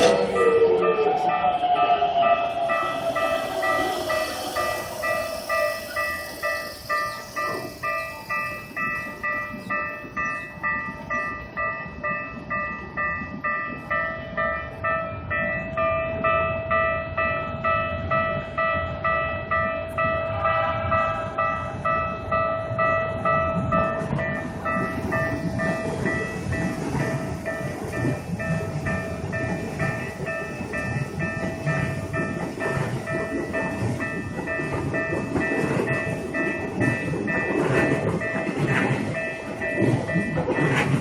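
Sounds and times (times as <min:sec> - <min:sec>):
level-crossing warning bell: 0:00.0 - 0:41.0
train rumbling past: 0:00.0 - 0:41.0.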